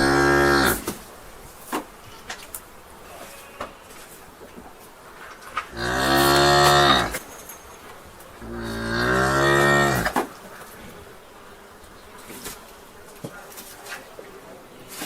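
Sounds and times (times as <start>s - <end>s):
cattle mooing: 0.0s - 0.8s, 5.7s - 7.2s, 8.4s - 10.2s.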